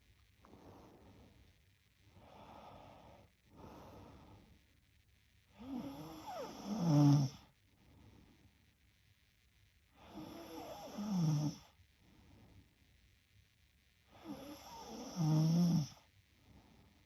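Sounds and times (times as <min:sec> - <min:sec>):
girl breathing heavily: 0:02.2 - 0:04.7
girl snoring: 0:05.6 - 0:07.5, 0:10.0 - 0:11.7, 0:14.1 - 0:16.0.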